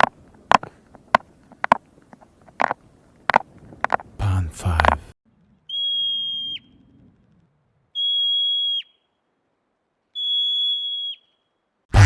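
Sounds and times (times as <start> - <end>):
high-pitched whistle tones: 5.7 - 6.8, 7.9 - 9.2, 10.1 - 11.6.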